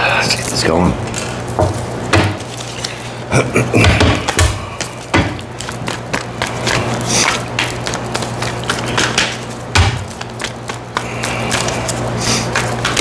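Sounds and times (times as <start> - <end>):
cards shuffled by hand: 4.8 - 13.0.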